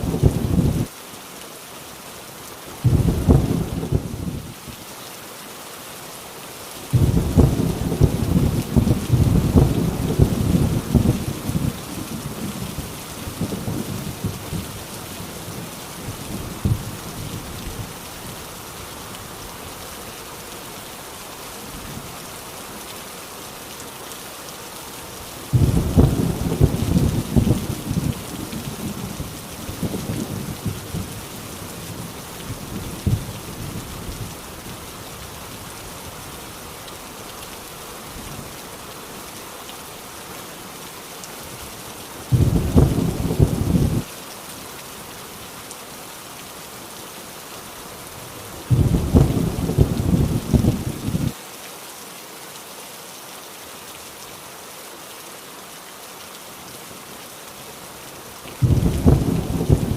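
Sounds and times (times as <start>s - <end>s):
thunder rumbling: 0.0s - 0.9s, 2.8s - 4.5s, 7.0s - 14.8s, 25.5s - 34.3s, 42.3s - 44.1s, 48.7s - 51.3s, 58.6s - 59.9s
heavy rain falling: 0.0s - 59.9s
thunderclap: 7.0s - 11.7s, 25.5s - 28.2s, 42.3s - 44.0s, 48.7s - 51.3s, 58.6s - 59.9s.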